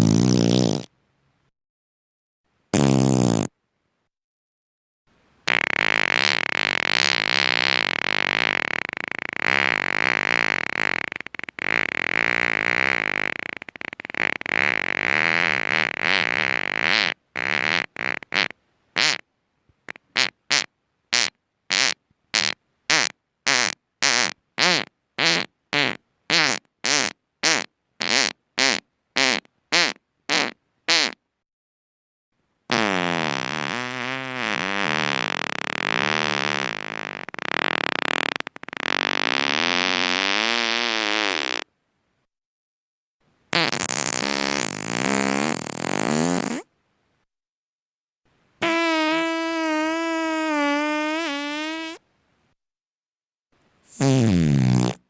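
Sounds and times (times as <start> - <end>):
wavering fart sounds: 0.0 - 0.9, 2.8 - 3.5, 5.5 - 19.2, 19.9 - 31.2, 32.7 - 41.7, 43.5 - 46.7, 48.6 - 52.0, 53.9 - 55.0.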